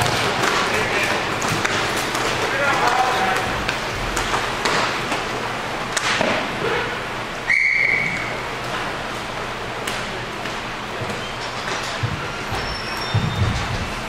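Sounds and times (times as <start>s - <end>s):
referee's whistle blast: 7.5s - 8.3s.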